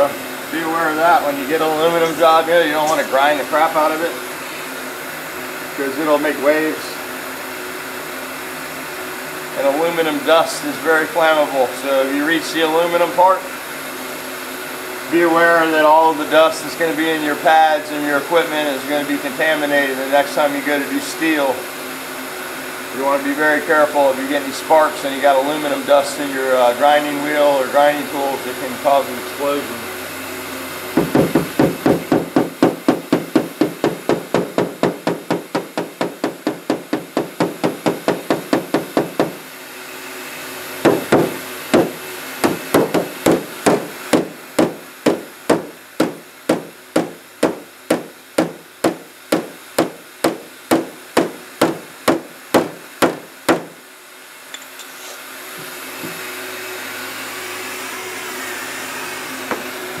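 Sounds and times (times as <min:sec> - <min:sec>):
heat gun blowing: 0:00.0 - 0:09.5, 0:27.7 - 0:53.9.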